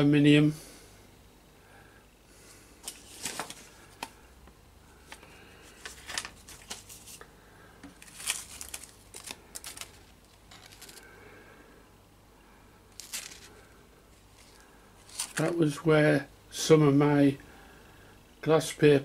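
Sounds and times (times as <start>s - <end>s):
handling rustling and scuffing: 7.9s - 11.0s, 13.0s - 13.5s, 14.2s - 15.6s.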